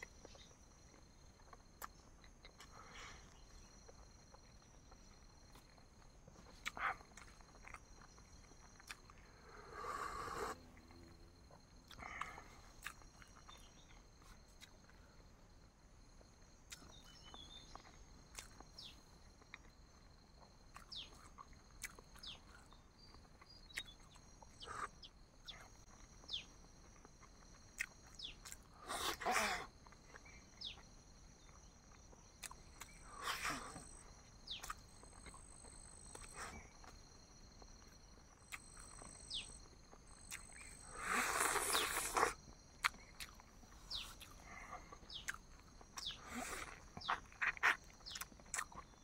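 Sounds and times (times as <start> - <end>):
person chewing: 0.0 - 9.4, 10.3 - 15.0, 16.2 - 49.0
mouth clicks and smacks: 27.8 - 29.3, 32.4 - 33.3, 41.3 - 44.4, 45.0 - 49.0.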